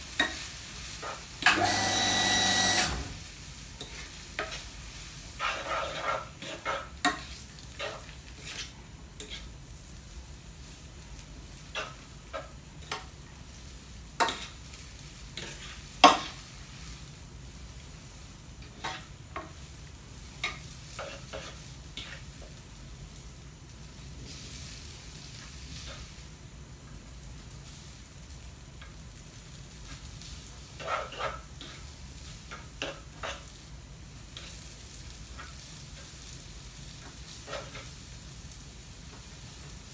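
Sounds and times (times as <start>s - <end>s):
food sizzling in a frying pan: 0.0s - 39.9s
utensil scraping and knocking pan: 5.4s - 9.5s.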